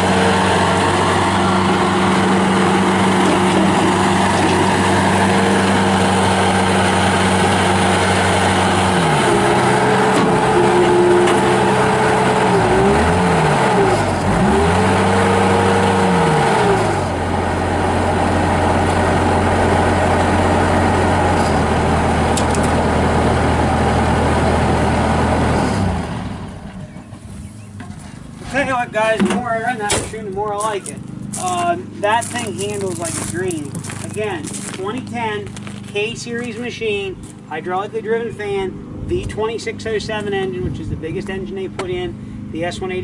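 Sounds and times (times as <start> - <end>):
diesel engine running: 0.0 - 43.0.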